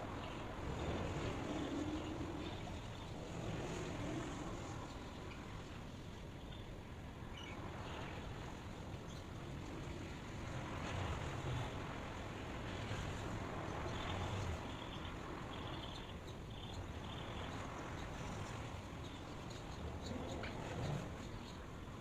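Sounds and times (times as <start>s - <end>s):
outdoor ambient rush: 0.0s - 22.0s.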